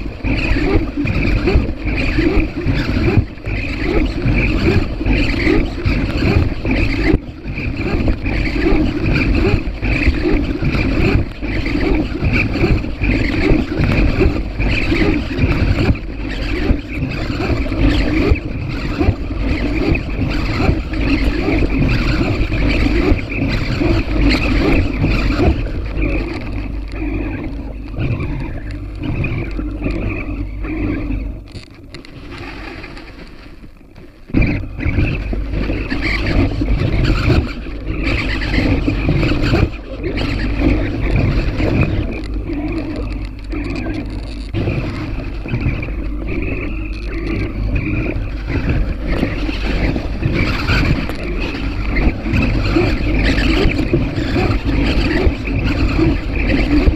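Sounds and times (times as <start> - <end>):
electric motor and propeller: 0.0 - 56.9
wind rush on microphone: 0.0 - 56.9.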